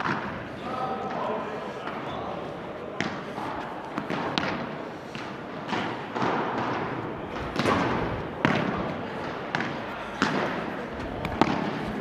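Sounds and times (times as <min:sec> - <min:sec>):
ball bouncing on court: 0:03.0 - 0:12.0
padel ball struck with rackets: 0:04.0 - 0:12.0.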